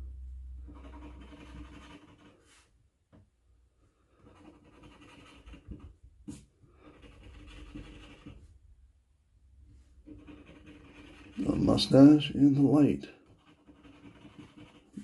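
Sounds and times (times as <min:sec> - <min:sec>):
scratch card being scratched: 0:00.6 - 0:02.5, 0:04.2 - 0:08.4, 0:10.0 - 0:15.0.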